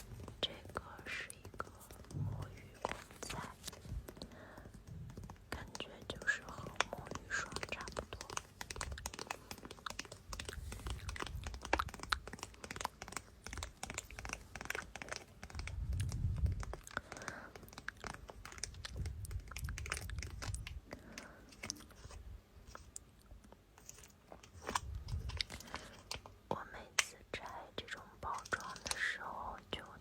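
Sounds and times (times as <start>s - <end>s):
fingertips tapping microphone: 0.0s - 21.4s.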